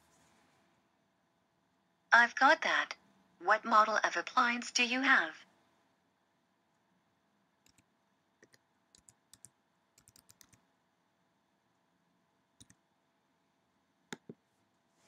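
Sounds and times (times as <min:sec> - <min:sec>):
faint keyboard typing: 0:07.6 - 0:10.7, 0:12.6 - 0:12.9
loud keyboard clicks: 0:08.4 - 0:10.6.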